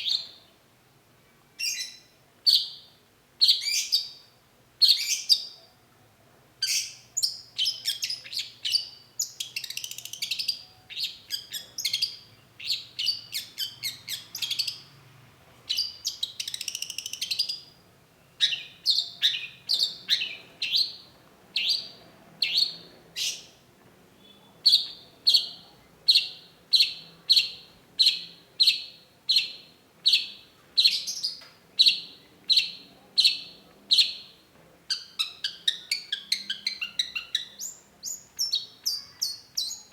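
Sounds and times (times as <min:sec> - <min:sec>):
bird chattering song: 0:06.6 - 0:14.9, 0:15.7 - 0:17.7, 0:18.4 - 0:23.6, 0:24.2 - 0:39.9.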